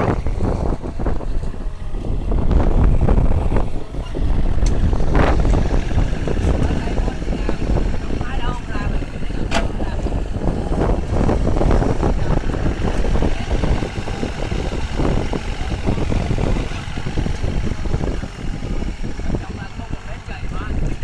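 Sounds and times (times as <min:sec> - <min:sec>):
excavator diesel engine rumbling: 0:00.0 - 0:21.0.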